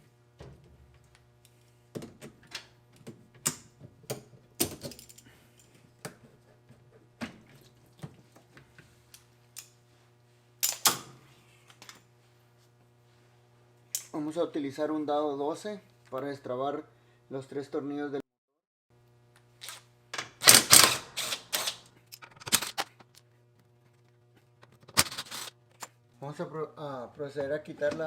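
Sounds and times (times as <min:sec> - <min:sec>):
faint steady hum: 0:00.0 - 0:17.7.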